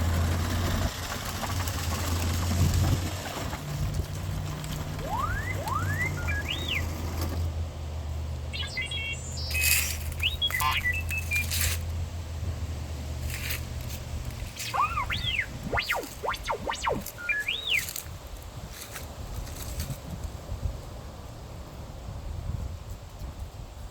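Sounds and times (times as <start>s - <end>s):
robot beeps and chirps: 5.0s - 7.0s, 8.6s - 11.7s, 14.6s - 18.0s
short noisy bursts: 14.6s - 17.9s.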